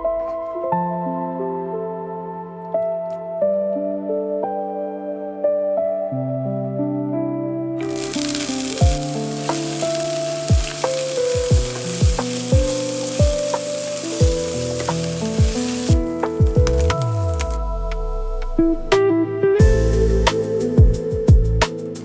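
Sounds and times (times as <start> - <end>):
food sizzling in hot oil: 8.5 - 17.2.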